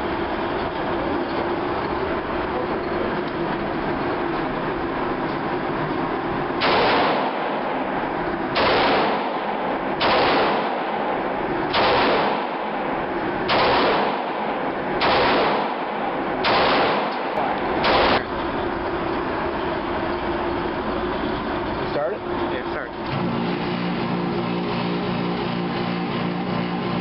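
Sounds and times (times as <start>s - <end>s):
gunshots: 6.6s - 7.8s, 8.5s - 18.3s.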